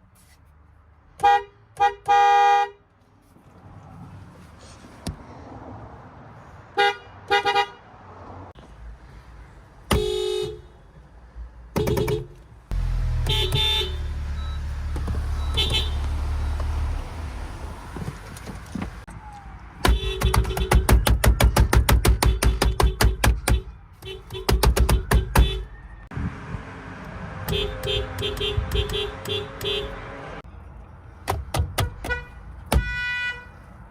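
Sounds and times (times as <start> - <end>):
car horn toots: 1.2 - 2.8, 9.9 - 10.7, 13.1 - 14.6, 15.4 - 16.4, 19.8 - 21.0, 22.2 - 25.7, 27.4 - 30.1, 31.8 - 33.5.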